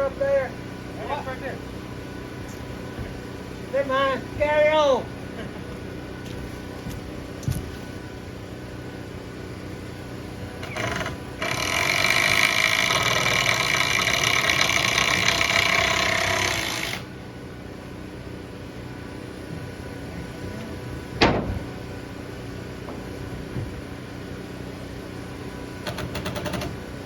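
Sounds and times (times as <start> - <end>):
power tool motor running: 10.6 - 17.2, 25.8 - 26.8.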